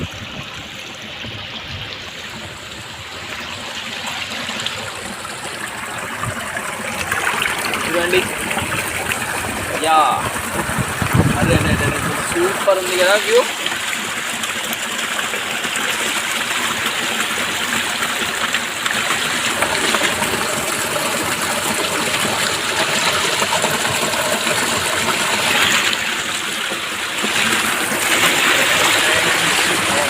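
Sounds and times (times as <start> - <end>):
waterfall pouring over rock: 0.0 - 30.0.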